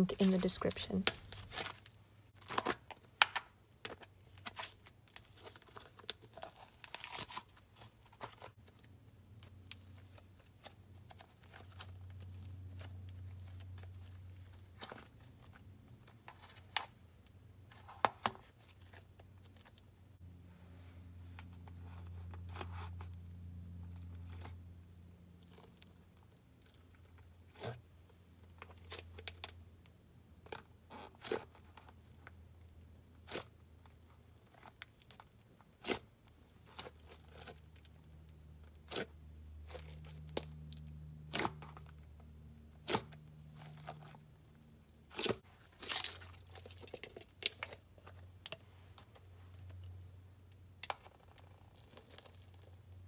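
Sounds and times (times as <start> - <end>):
slime with beads crunching and popping: 45.1 - 48.4, 51.0 - 52.9.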